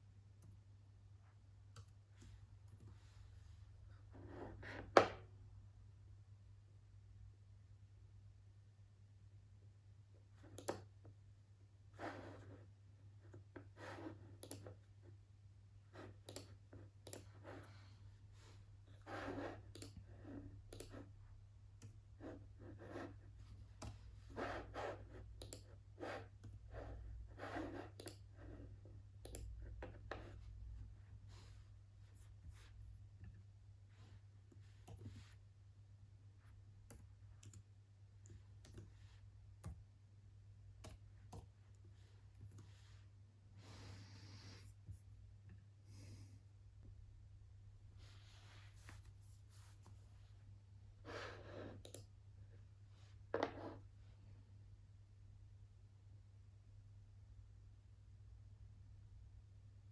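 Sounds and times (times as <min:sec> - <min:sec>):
mouse and keyboard clicking: 0:10.6 - 0:10.9, 0:14.4 - 0:14.8, 0:16.2 - 0:17.3, 0:19.6 - 0:20.0, 0:20.7 - 0:21.0, 0:25.4 - 0:25.7, 0:27.9 - 0:28.3, 0:29.2 - 0:29.6.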